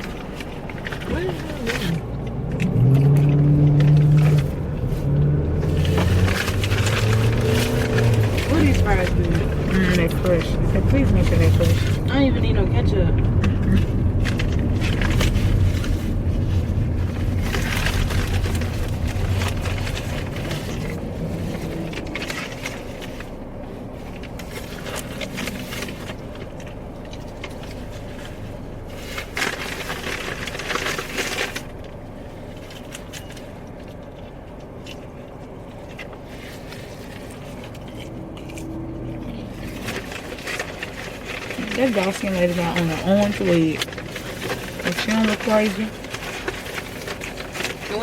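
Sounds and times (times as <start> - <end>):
paper bag rustling: 0.0 - 12.7, 13.3 - 48.0
low car rumble: 0.0 - 48.0.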